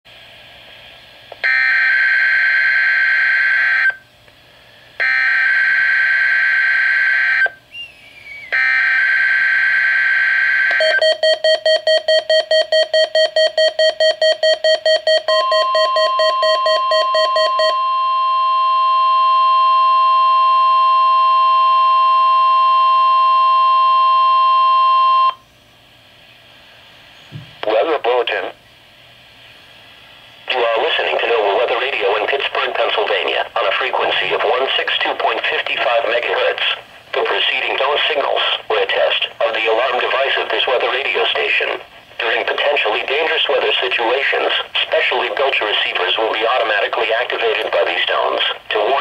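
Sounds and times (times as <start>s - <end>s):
steady warning alarm tone: 1.4s - 4.1s, 5.0s - 7.6s, 8.5s - 25.4s
rapid beeping alarm: 5.0s - 7.5s, 8.5s - 25.4s.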